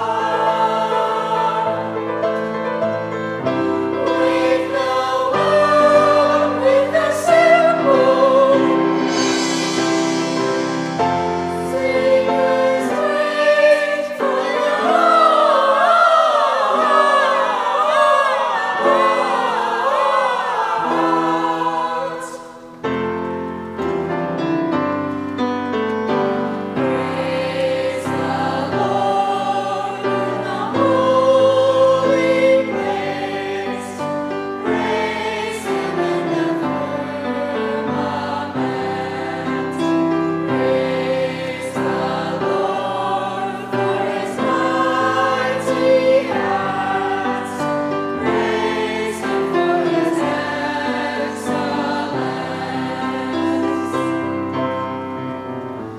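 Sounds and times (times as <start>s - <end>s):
choir singing: 0.0s - 25.1s, 25.7s - 55.9s
steady low notes: 4.8s - 13.3s.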